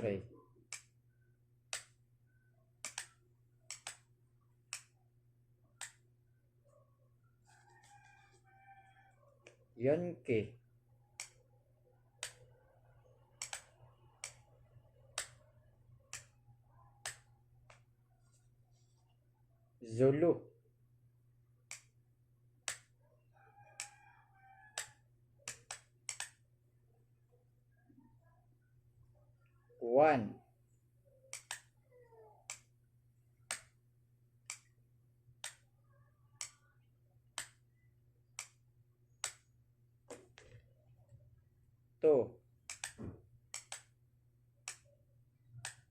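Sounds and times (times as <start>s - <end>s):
signal light switch clicking: 2.8s - 3.1s, 3.7s - 4.0s, 13.4s - 14.4s, 25.5s - 26.4s, 31.3s - 31.7s, 42.7s - 43.9s.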